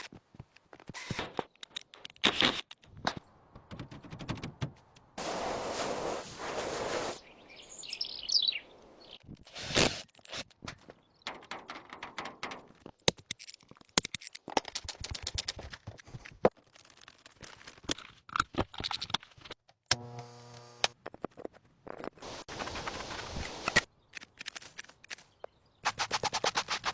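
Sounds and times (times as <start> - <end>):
sharp clicks knocks and scrapes: 0.0 - 5.1, 9.2 - 20.0
bird chirps: 7.2 - 9.3.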